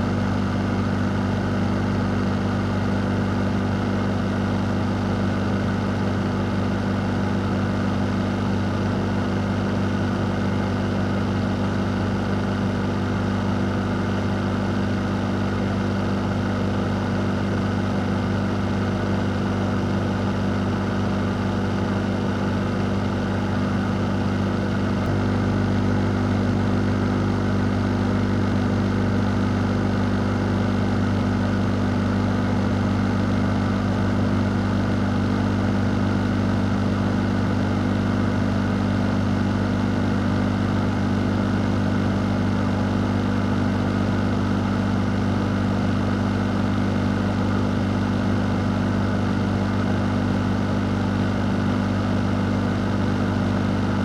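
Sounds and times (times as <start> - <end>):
fan blowing air with low hum: 0.0 - 54.0.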